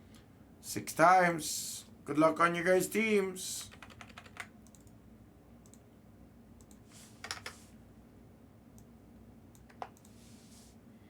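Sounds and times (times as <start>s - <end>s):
computer keyboard clicks: 3.6s - 5.0s, 6.6s - 7.6s, 9.5s - 10.1s.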